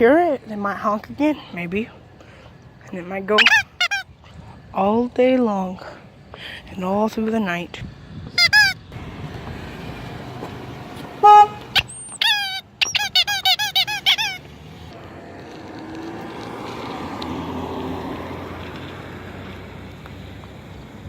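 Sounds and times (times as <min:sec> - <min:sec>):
hand-held horn honking: 0:08.4 - 0:08.8, 0:11.2 - 0:14.4
car passing: 0:08.9 - 0:12.1, 0:13.8 - 0:21.0.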